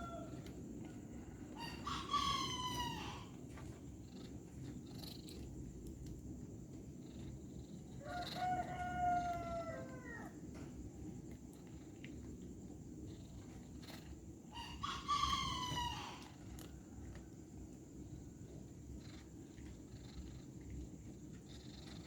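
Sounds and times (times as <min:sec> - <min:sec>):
rooster crowing: 0:00.0 - 0:03.3, 0:08.0 - 0:10.4, 0:14.6 - 0:16.8.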